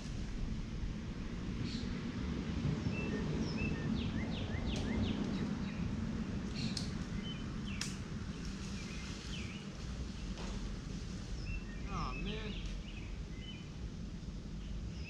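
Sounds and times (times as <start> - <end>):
steady low rumble: 0.0 - 15.0
small birds chirping: 2.8 - 10.6, 11.2 - 15.0.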